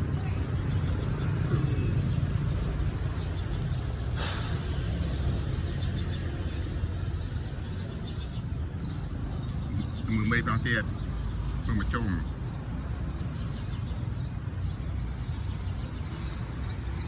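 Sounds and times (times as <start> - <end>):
brief hissing: 4.2 - 4.8.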